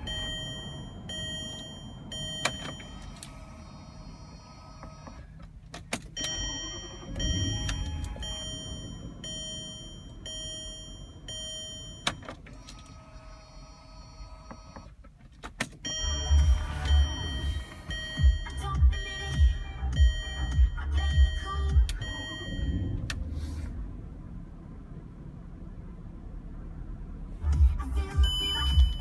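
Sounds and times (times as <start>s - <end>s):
dashboard warning beep: 0.0s - 3.4s, 6.0s - 12.4s, 15.8s - 23.2s, 28.1s - 29.0s
low whirring: 6.2s - 14.8s.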